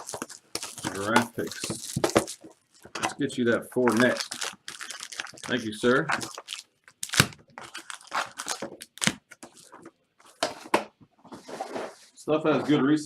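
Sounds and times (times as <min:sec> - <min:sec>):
packaging being torn open: 0:00.0 - 0:03.2, 0:03.8 - 0:09.8.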